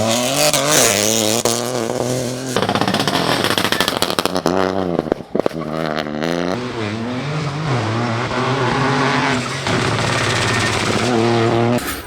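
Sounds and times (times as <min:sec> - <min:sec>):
car engine revving: 0:00.0 - 0:12.0
tyre and road noise: 0:00.0 - 0:12.0.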